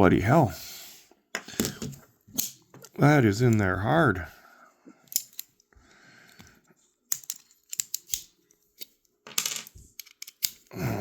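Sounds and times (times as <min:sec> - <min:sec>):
small metal clicks and clinks: 0:05.0 - 0:05.7, 0:07.1 - 0:10.7.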